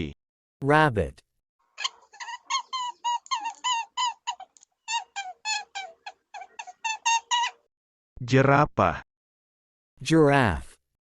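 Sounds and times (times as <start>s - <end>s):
rabbit squeaking: 1.8s - 7.7s.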